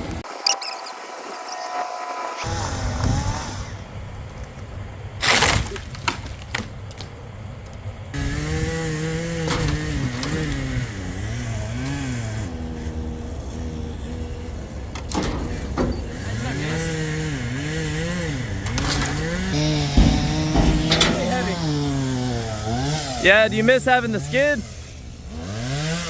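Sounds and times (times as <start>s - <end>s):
chainsaw engine running: 8.2s - 14.9s, 16.0s - 26.0s
light knocks: 18.7s - 21.9s.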